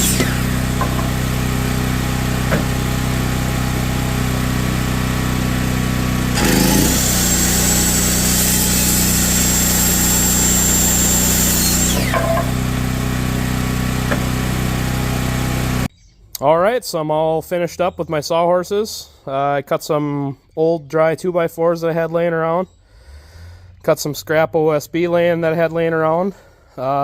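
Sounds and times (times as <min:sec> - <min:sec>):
circular saw cutting board: 0:00.0 - 0:15.9
low engine hum: 0:00.0 - 0:15.9.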